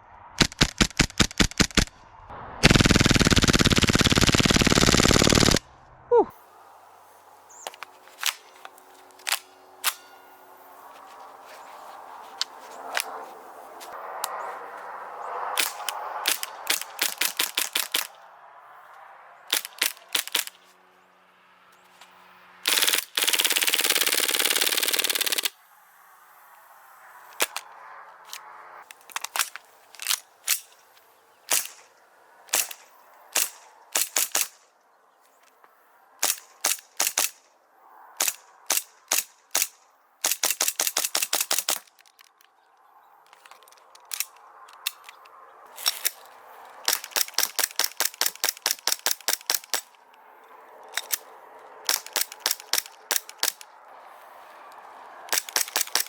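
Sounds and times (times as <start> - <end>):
airsoft gun shooting: 0.4 - 1.9, 2.6 - 5.6, 22.7 - 25.6.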